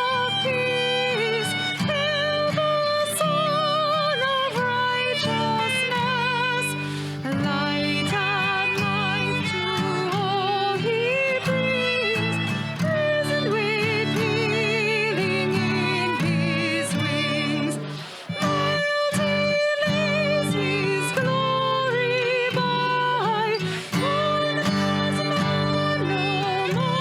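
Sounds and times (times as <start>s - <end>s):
acoustic guitar chords: 0.0s - 27.0s.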